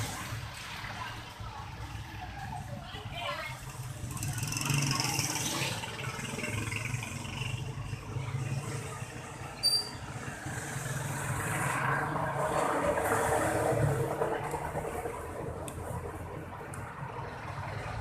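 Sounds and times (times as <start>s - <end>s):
short high beep: 9.6s - 10.0s.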